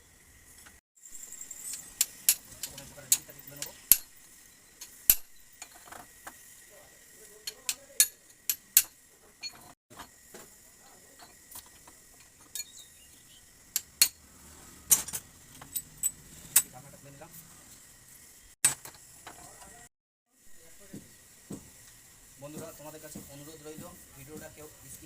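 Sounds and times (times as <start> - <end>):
metal tools clicking and clinking: 1.1 - 6.4, 7.3 - 9.8, 11.1 - 12.8, 14.9 - 16.8.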